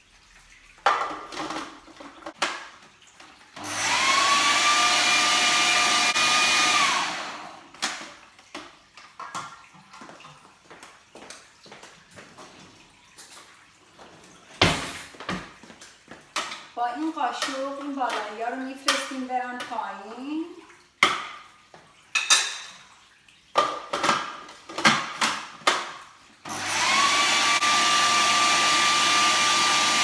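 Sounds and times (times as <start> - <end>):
food processor motor whining: 3.6 - 7.8, 26.5 - 30.0.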